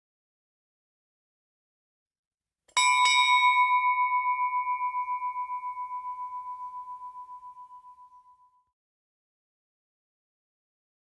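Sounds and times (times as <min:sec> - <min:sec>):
small bell ringing: 0:02.8 - 0:08.7.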